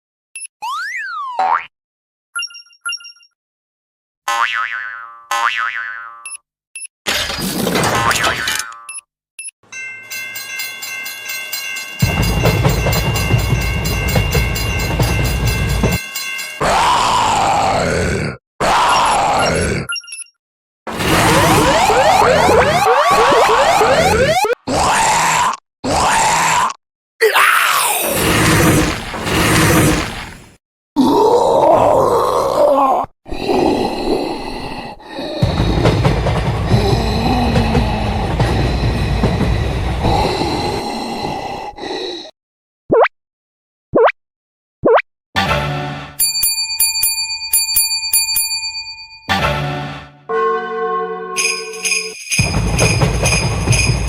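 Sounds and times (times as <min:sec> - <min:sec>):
railroad crossing bell ringing: 0:09.7 - 0:16.6, 0:46.2 - 0:49.3
passing train rumble: 0:12.0 - 0:16.0
groaning voice-like sound: 0:16.6 - 0:19.9, 0:20.9 - 0:42.4.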